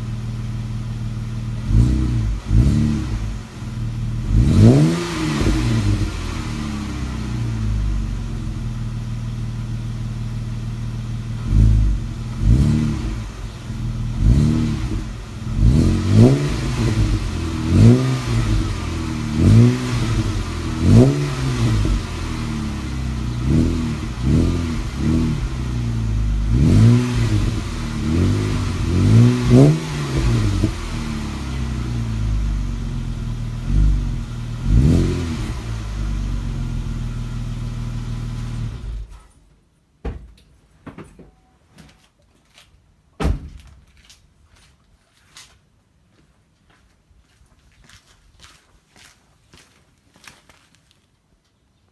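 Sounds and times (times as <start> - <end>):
car engine idling and revving: 0.0 - 39.2.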